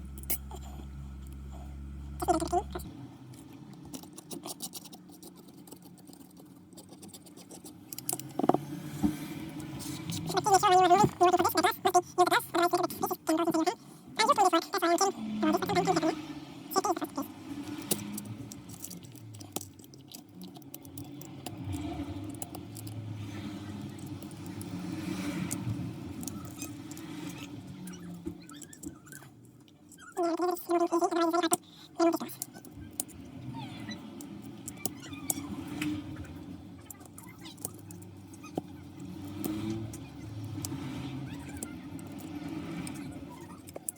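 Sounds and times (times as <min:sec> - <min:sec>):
low steady hum: 0:00.0 - 0:04.2
small squeaks: 0:09.7 - 0:43.9.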